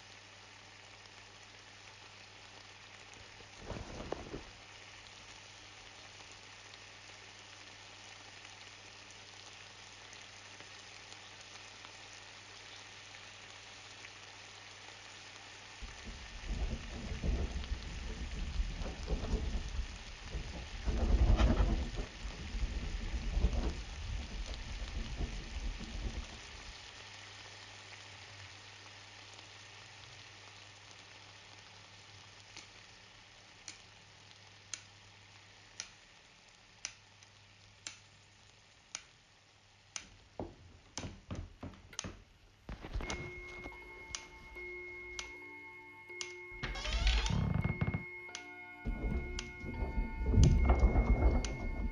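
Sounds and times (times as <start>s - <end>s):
rain hiss: 0.0s - 51.9s
thunder rumble: 3.6s - 4.6s, 15.8s - 26.9s, 47.4s - 51.9s.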